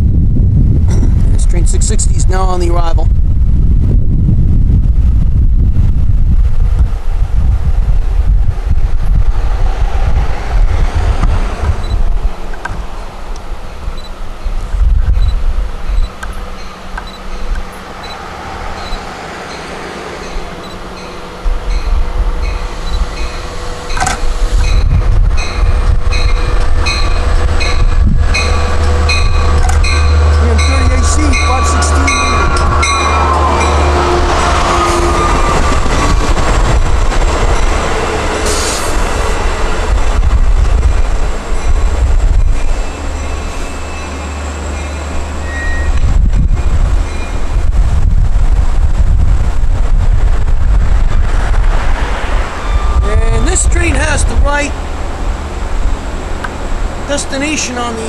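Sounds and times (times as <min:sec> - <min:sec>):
diesel locomotive rumble: 0:00.0 - 0:58.0.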